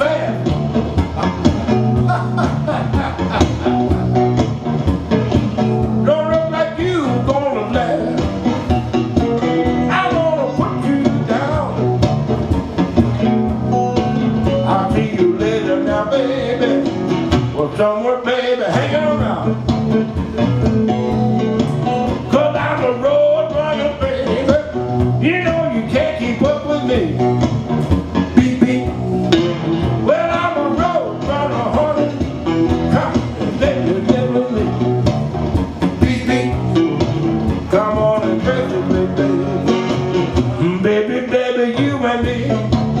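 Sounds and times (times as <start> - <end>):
blues guitar over a beat: 0.0 - 43.0
person singing: 9.8 - 11.9, 14.5 - 19.6, 28.4 - 29.0, 35.8 - 39.8.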